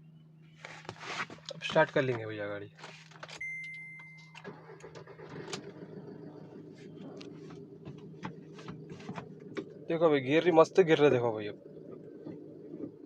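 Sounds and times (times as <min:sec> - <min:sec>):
car engine idling: 0:00.0 - 0:13.0
short electronic beep: 0:03.4 - 0:04.4.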